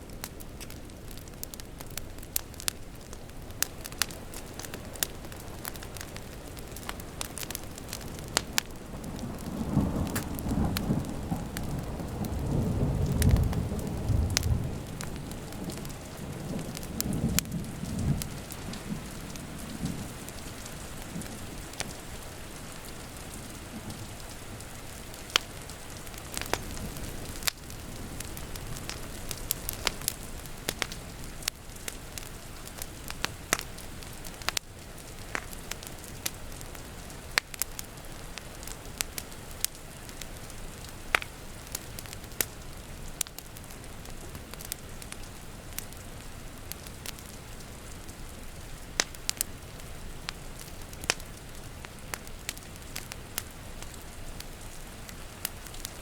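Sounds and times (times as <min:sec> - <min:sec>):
rain pattering: 0:00.0 - 0:56.0
wood fire crackling: 0:00.0 - 0:56.0
thunder rumbling: 0:08.2 - 0:21.8.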